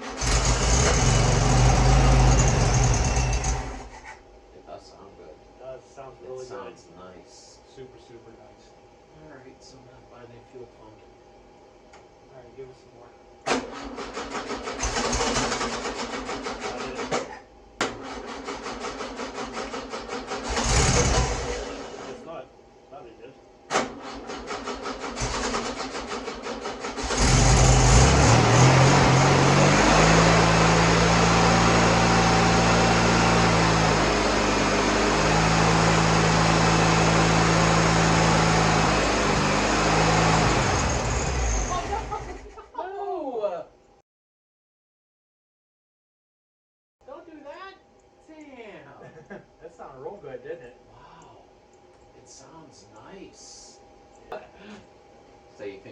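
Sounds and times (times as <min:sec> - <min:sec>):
engine cranking on starter: 0:00.0 - 0:04.2, 0:13.4 - 0:22.2, 0:23.7 - 0:34.6.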